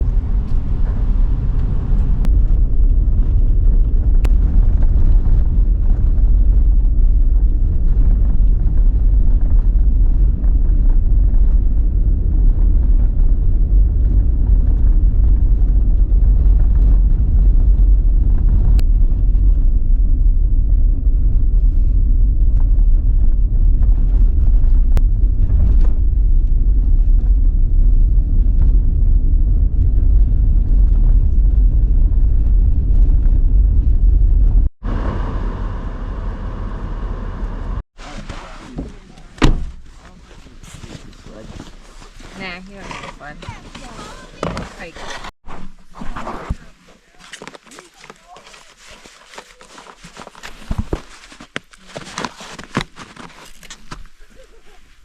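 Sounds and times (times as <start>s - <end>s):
road and engine rumble inside vehicle: 0.0s - 19.7s, 31.8s - 38.0s.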